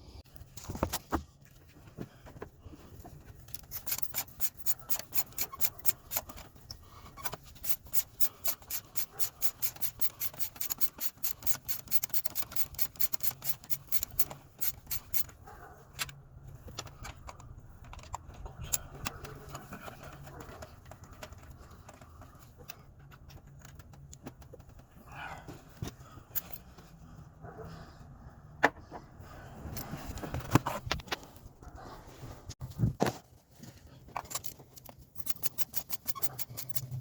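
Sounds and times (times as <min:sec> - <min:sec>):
scattered clicks: 0:07.2 - 0:15.4, 0:34.3 - 0:37.0.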